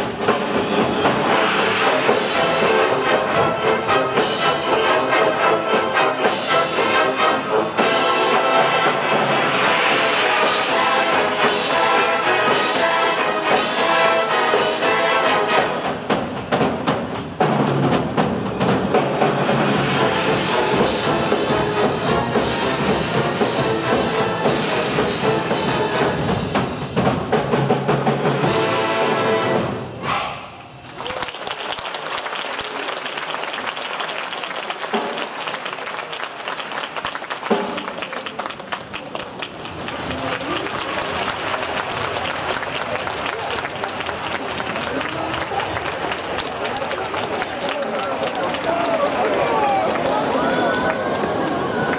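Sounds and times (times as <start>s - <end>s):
brass chords: 0.0s - 16.2s, 18.9s - 30.4s
audience applause: 30.7s - 51.9s.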